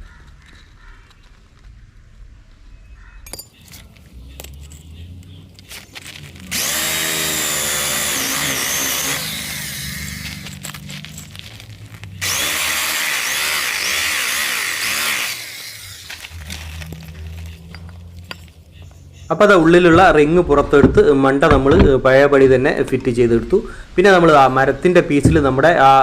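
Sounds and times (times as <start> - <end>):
electric drill boring into wood: 6.4 - 10.8, 12.2 - 17.2.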